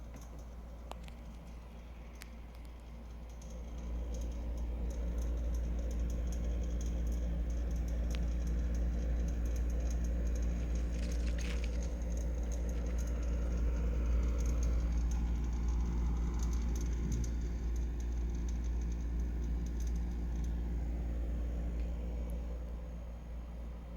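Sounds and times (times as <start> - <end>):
dehumidifier humming: 0.0 - 23.9
scratchy crackling and pattering: 9.6 - 13.7.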